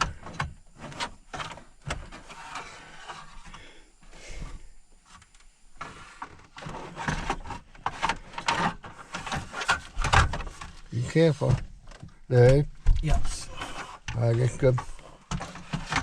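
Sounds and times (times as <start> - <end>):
panel scraping against dashboard: 0.0 - 3.6, 5.0 - 11.8, 13.2 - 16.0.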